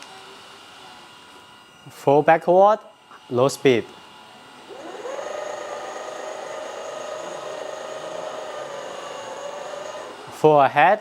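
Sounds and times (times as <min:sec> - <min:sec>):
toy electric motor whining: 0:04.7 - 0:10.4.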